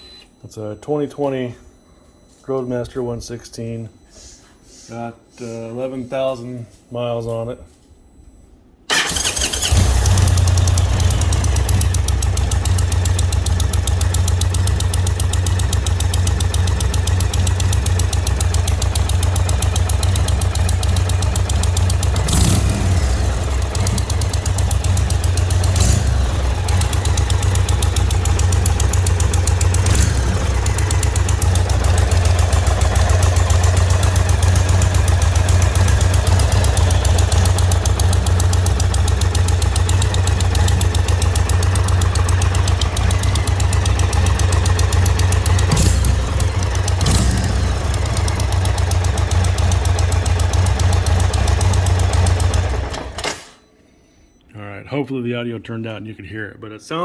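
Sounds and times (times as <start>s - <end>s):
motorcycle engine idling: 8.9s - 53.2s
exhaust ticking: 8.9s - 53.3s.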